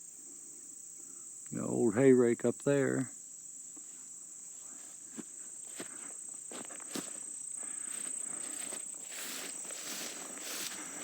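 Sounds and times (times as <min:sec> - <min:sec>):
crickets chirping: 0:00.0 - 0:11.0
footsteps walking: 0:03.8 - 0:11.0.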